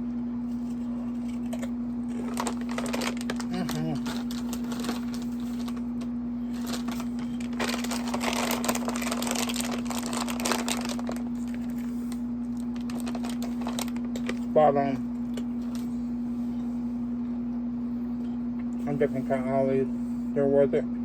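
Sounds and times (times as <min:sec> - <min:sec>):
air conditioner hum: 0:00.0 - 0:21.0
snack bag crinkling: 0:00.6 - 0:14.6, 0:15.2 - 0:16.0
potato chips crunching: 0:00.6 - 0:16.0.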